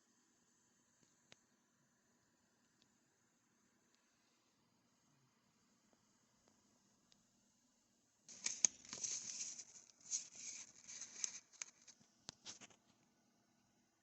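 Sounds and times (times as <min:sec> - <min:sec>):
packaging rustling: 0:08.3 - 0:12.8.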